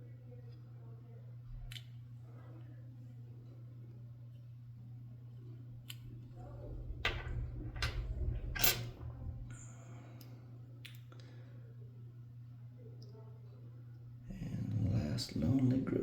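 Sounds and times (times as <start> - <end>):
steady low hum: 0.0 - 16.0
metal clicks and scraping of lock: 8.6 - 8.9.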